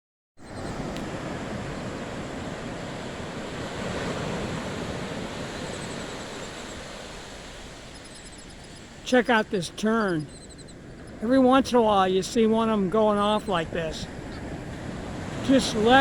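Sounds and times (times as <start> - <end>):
ocean surf washing on beach: 0.4 - 16.0
faint high chirping: 5.6 - 6.8, 7.8 - 11.4.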